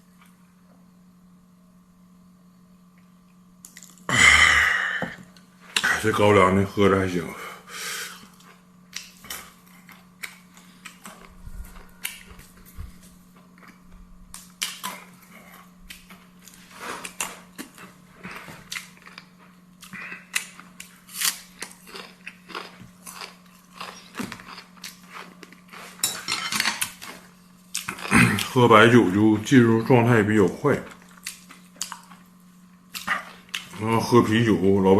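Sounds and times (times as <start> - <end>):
steady low hum: 0.0 - 34.9
person chewing crunchy food: 8.1 - 28.6, 30.9 - 33.9.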